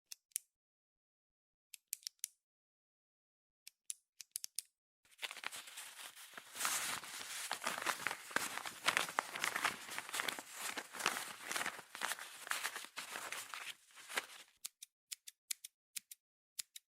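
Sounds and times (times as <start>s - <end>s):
small sharp clicks: 3.7s - 4.7s, 13.8s - 16.9s
dense scratching and crinkling: 5.2s - 14.4s.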